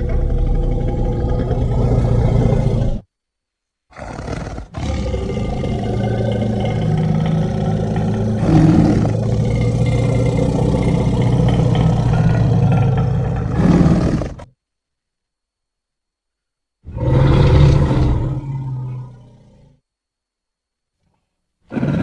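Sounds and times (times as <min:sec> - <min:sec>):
deep creature roar: 0:00.0 - 0:03.0, 0:03.9 - 0:14.5, 0:16.9 - 0:19.6.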